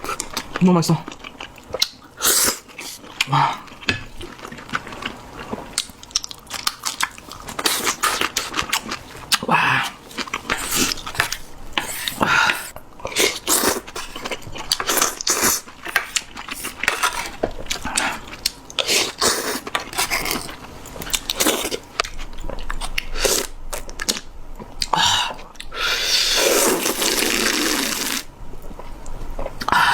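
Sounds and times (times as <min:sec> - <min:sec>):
chewing and biting: 0:00.0 - 0:25.0.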